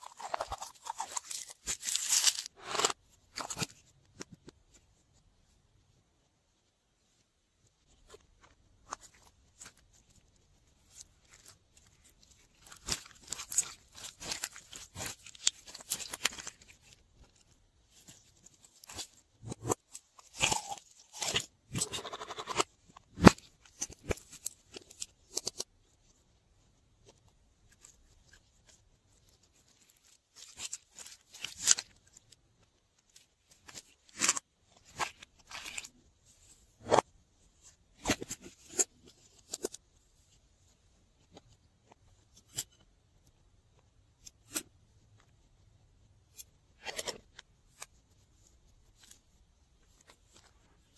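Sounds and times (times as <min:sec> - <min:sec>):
slime crackling and crunching: 0:00.0 - 0:03.0.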